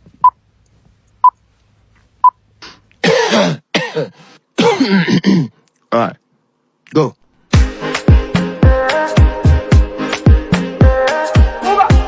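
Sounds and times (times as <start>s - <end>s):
person coughing: 3.0s - 5.6s.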